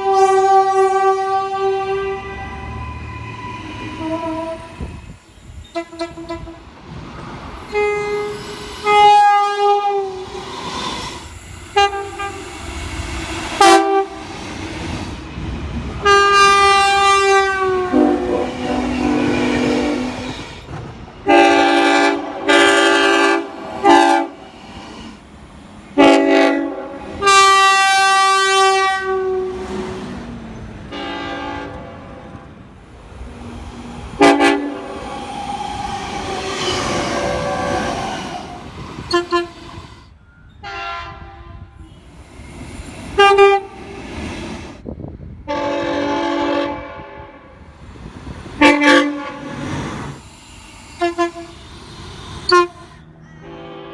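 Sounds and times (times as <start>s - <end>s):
train air horn blasts: 0.0s - 6.7s, 7.6s - 10.5s, 11.7s - 12.7s, 13.5s - 14.3s, 16.0s - 20.4s, 21.3s - 25.2s, 26.0s - 30.1s, 30.9s - 32.8s, 33.9s - 42.2s, 43.2s - 44.0s, 45.4s - 47.6s, 48.6s - 50.2s, 51.0s - 53.9s
passing train rumbling: 0.0s - 53.9s.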